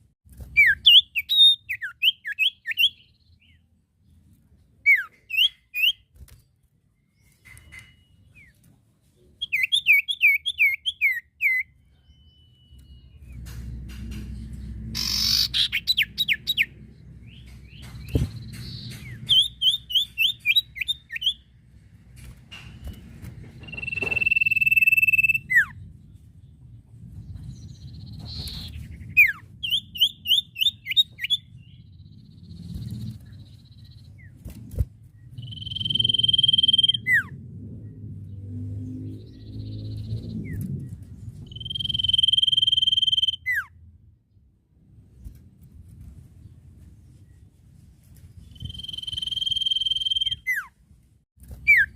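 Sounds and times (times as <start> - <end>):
bird singing varied song: 0.4 - 21.6, 22.7 - 44.5, 48.2 - 50.7
steady low rumble: 21.4 - 42.1.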